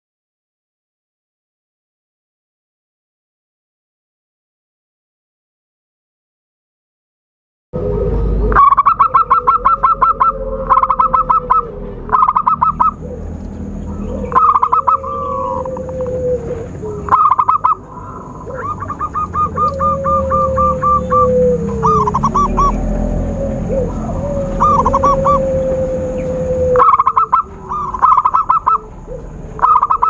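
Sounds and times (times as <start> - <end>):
low drawn-out dove note: 7.8 - 12.3
dove cooing: 7.8 - 30.0.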